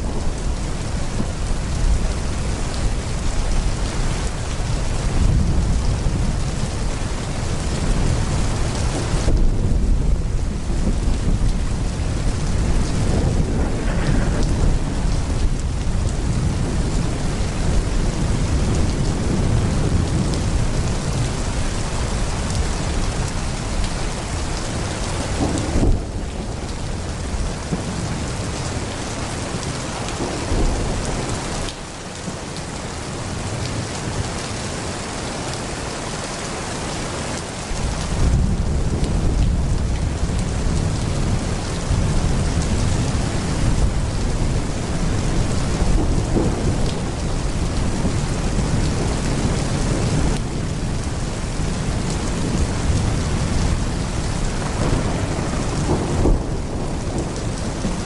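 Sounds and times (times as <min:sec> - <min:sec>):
low thunder rumbling: 0:00.0 - 0:32.5, 0:37.8 - 0:58.0
heavy rain pouring: 0:00.0 - 0:58.0
sharp thunder crack: 0:13.0 - 0:15.5, 0:46.0 - 0:47.2.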